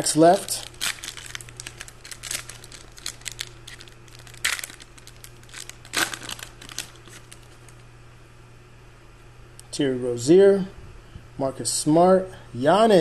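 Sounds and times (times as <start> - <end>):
wrapper crinkling: 0.3 - 7.8
wrapper ripping: 0.3 - 7.8.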